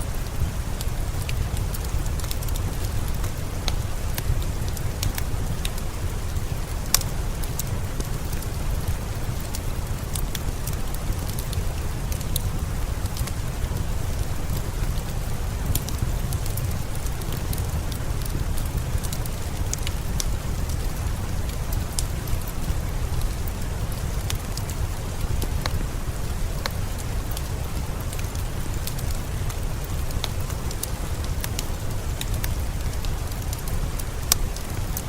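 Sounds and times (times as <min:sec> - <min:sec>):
steady rain hiss: 0:00.0 - 0:35.0
wood fire crackling: 0:00.0 - 0:35.0.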